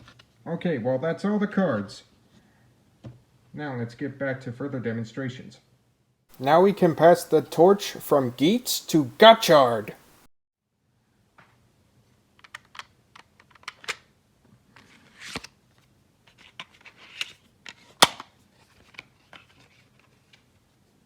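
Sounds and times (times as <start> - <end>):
plastic toy parts clicking: 12.4 - 14.0
plastic snap: 18.0 - 18.3.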